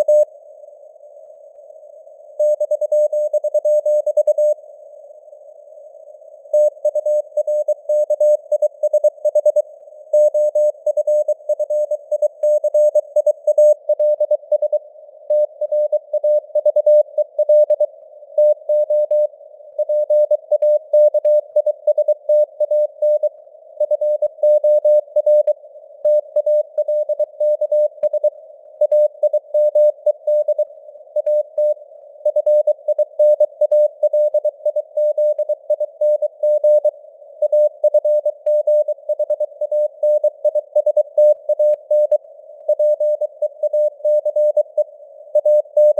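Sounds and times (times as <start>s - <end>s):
morse code beeps: 10.2s - 44.8s, 45.4s - 45.9s.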